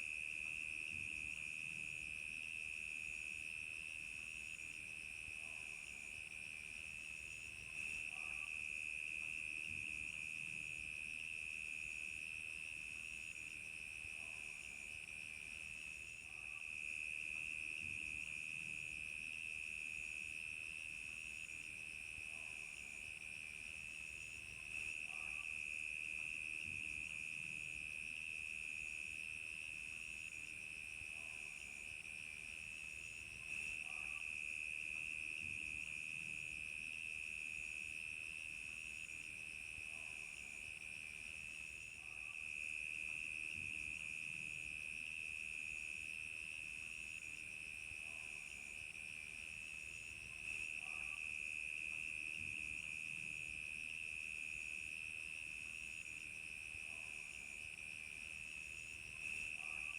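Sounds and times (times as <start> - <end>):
crickets trilling chorus: 38.6 - 59.9.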